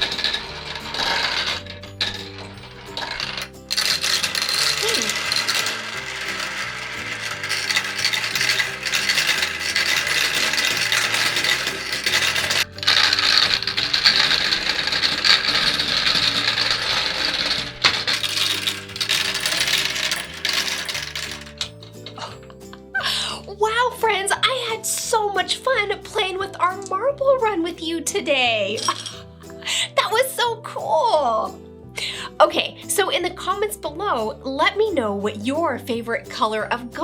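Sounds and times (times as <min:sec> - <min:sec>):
gumballs clattering down marble run: 0:00.0 - 0:22.4.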